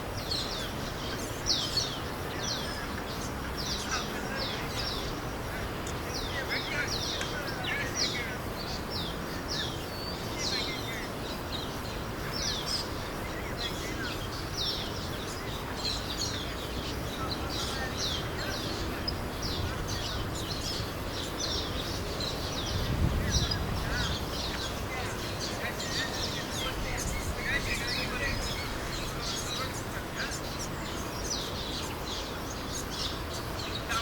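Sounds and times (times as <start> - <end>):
birds chirping in chorus: 0.0 - 34.0.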